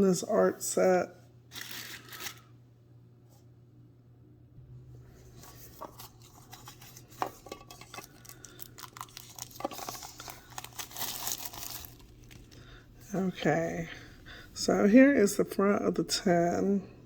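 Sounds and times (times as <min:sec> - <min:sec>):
plastic wrap crinkling: 0:01.5 - 0:02.5, 0:05.3 - 0:12.8.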